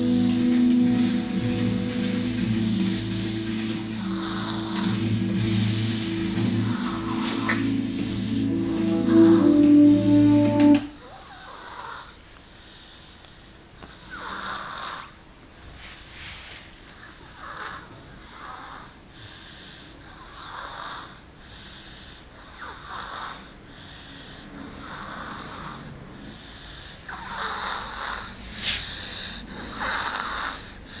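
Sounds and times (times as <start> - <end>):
baby snoring: 2.6 - 8.4, 13.8 - 15.2, 17.0 - 31.0.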